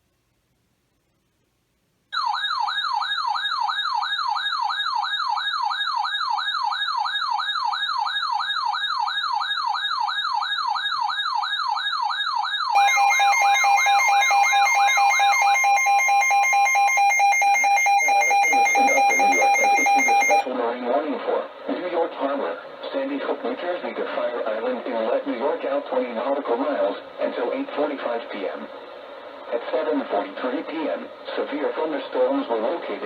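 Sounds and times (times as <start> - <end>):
electronic warbling siren: 12.8 - 20.4
two-tone alert signal: 12.8 - 20.4.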